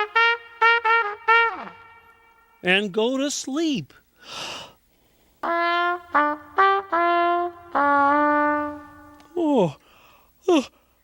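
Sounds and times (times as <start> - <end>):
bugle call: 0.0 - 2.8, 5.4 - 9.4
person sighing: 9.4 - 10.8.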